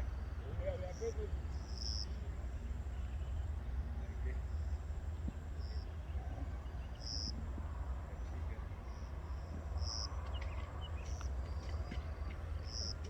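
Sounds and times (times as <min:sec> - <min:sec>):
high insect chirps: 0:00.0 - 0:03.4.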